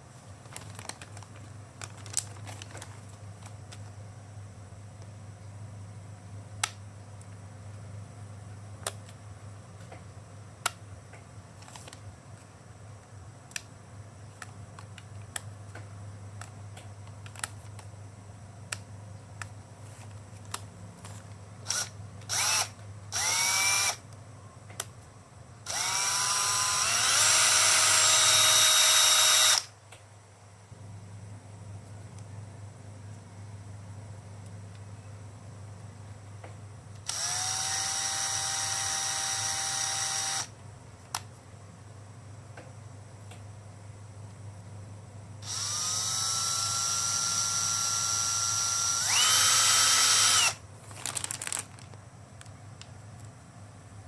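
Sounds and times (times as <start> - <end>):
steady low hum: 0.0 - 54.0
hand drill motor whining: 21.7 - 24.0, 25.7 - 29.7, 37.1 - 40.5, 45.4 - 50.6.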